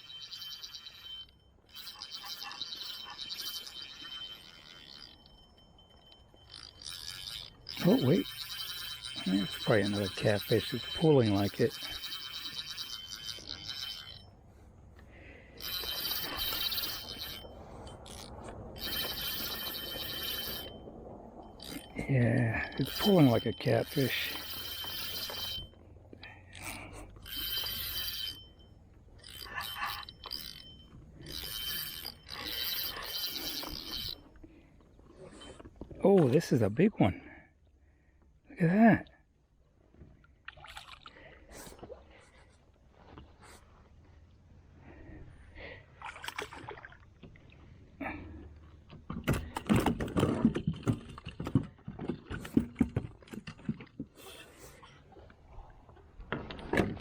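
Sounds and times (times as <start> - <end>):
fishing reel whirring: 0.0 - 14.4, 15.6 - 20.8, 21.4 - 25.7, 26.6 - 28.6, 29.2 - 34.3.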